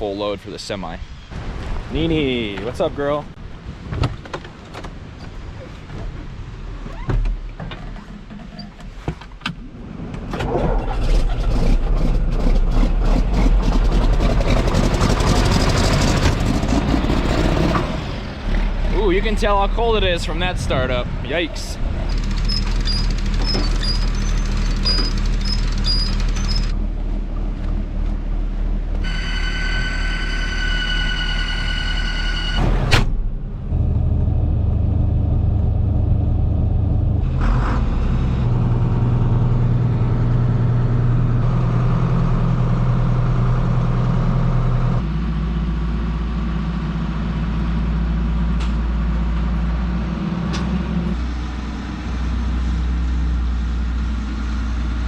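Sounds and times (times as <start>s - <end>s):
heavy farm vehicle engines: 9.6s - 55.0s
steady high whine: 19.1s - 37.2s.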